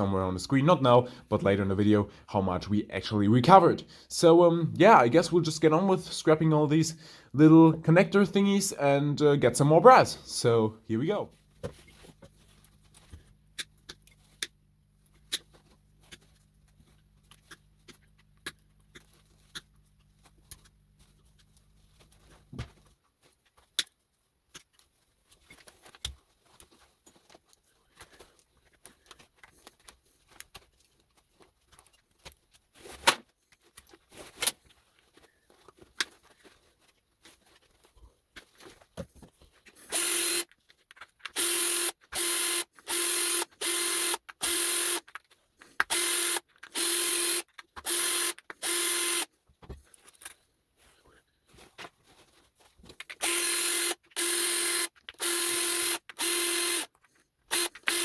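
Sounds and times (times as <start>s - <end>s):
small power tool whirring: 39.9s - 40.5s, 41.3s - 45.0s, 45.9s - 49.3s, 53.2s - 58.0s.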